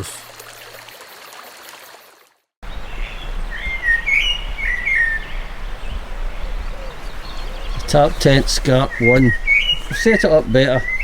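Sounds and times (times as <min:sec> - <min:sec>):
outdoor background noise: 0:00.0 - 0:11.0
songbird chirping: 0:02.6 - 0:11.0.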